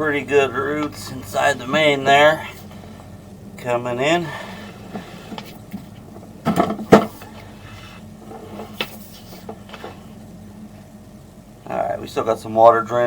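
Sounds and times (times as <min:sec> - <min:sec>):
low steady hum: 0:00.0 - 0:13.0
irregular clicks and knocks: 0:04.9 - 0:07.4.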